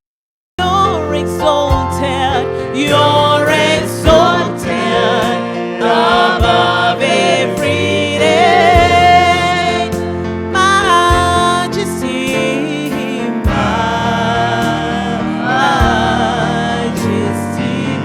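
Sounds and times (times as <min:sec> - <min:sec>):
voices singing gospel: 0:01.5 - 0:18.0
band with drum beats: 0:06.1 - 0:06.8, 0:07.6 - 0:10.1.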